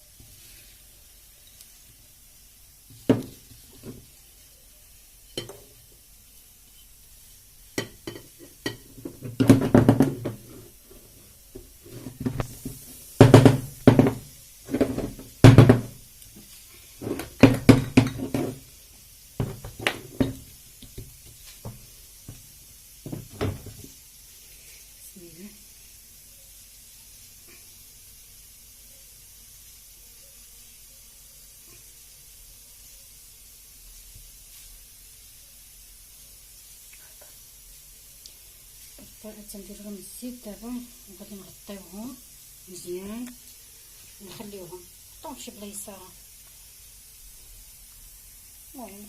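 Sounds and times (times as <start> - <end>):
glass jars clinking: 7.8 - 10.2, 17.5 - 18.6.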